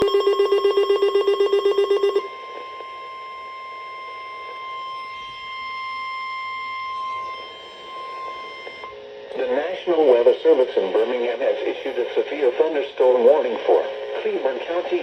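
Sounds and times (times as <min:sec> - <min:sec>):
rapidly pulsing electronic alarm: 0:00.0 - 0:09.0.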